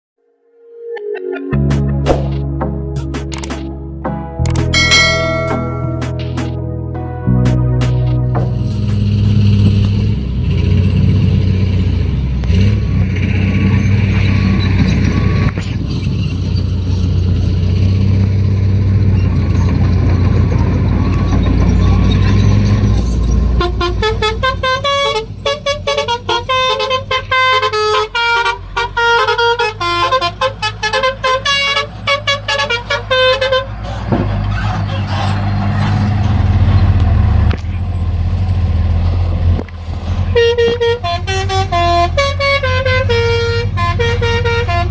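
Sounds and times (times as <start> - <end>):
truck diesel engine running: 7.4 - 44.9
multi-tone air horn tune: 23.6 - 33.7, 40.4 - 44.9.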